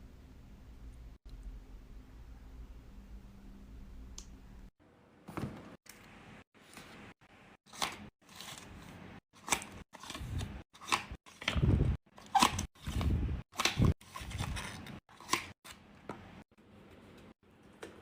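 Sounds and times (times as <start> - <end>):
low steady hum: 0.0 - 5.2.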